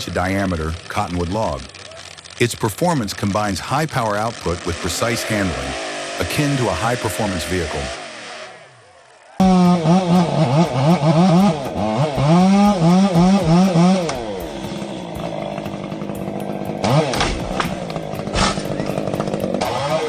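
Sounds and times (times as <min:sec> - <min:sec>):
chainsaw revving: 0:00.0 - 0:20.0.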